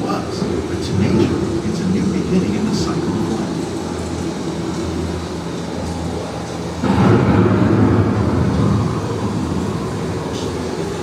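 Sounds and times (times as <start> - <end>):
steady low hum: 6.8 - 11.0
thunder rumble: 6.8 - 11.0.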